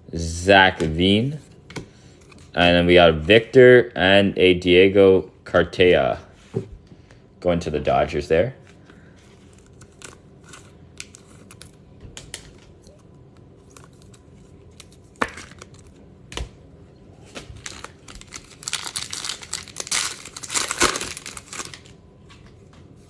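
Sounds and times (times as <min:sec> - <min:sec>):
foil pack tearing and crinkling: 0:09.4 - 0:12.6, 0:13.6 - 0:16.0, 0:17.3 - 0:22.0.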